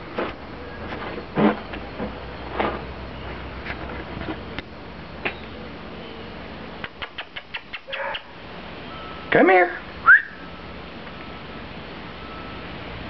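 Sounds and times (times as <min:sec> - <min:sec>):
sharp clicks: 0:06.8 - 0:08.3.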